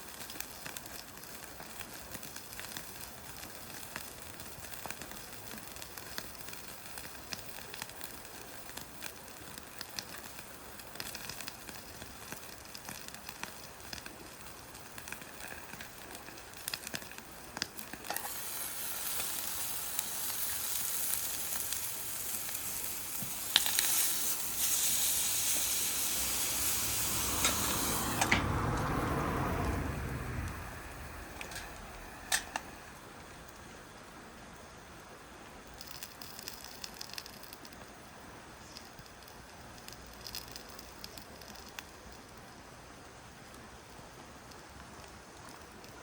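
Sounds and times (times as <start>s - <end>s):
food sizzling in a frying pan: 0.0s - 32.9s
wood fire crackling: 0.0s - 46.0s.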